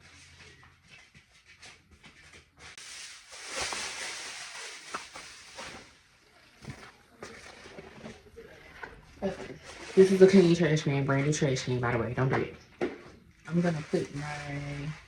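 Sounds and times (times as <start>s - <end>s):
packaging rustling: 2.8s - 6.0s.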